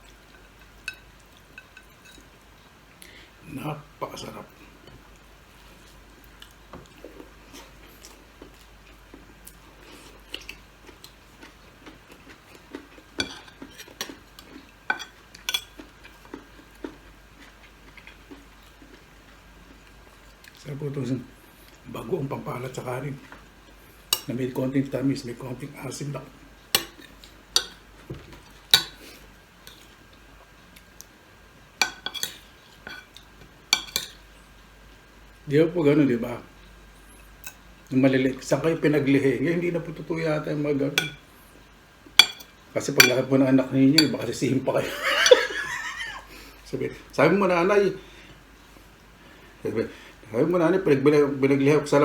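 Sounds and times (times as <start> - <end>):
cutlery clinking against plate: 13.2 - 15.9, 31.8 - 33.2, 33.8 - 34.2, 41.0 - 41.2, 42.2 - 43.2, 44.0 - 44.2.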